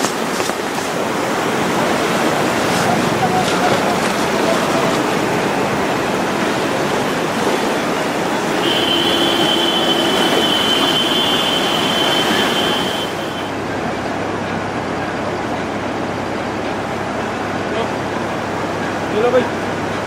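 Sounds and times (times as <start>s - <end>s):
floodwater rushing: 0.0s - 20.0s
steady high-pitched tone: 8.0s - 19.0s.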